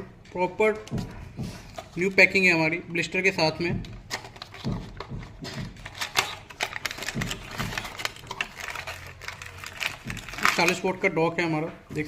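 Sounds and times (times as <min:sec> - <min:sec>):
plastic packaging clicks and taps: 0:03.6 - 0:10.8.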